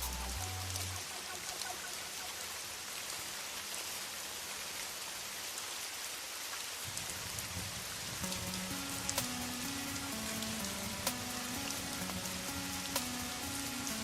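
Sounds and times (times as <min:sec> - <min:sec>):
steady rain falling: 0:00.0 - 0:14.0.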